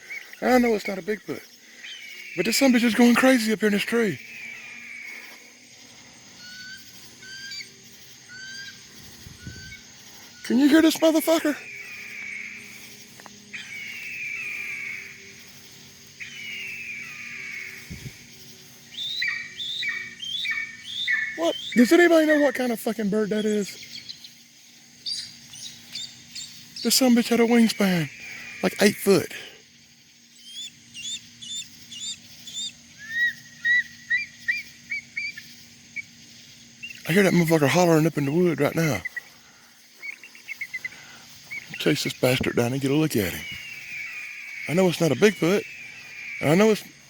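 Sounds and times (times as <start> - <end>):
bird calling: 0.0 - 47.0
short downward-sweeping bird calls: 6.4 - 12.9, 18.9 - 22.8, 30.3 - 36.2.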